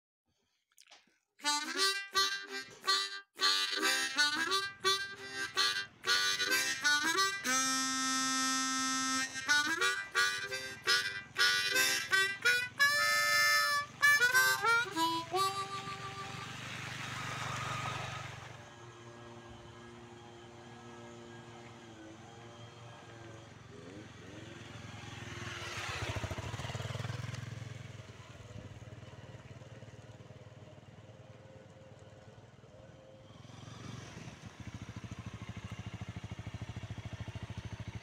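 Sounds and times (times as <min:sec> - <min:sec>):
harmonica music: 0:01.4 - 0:24.4.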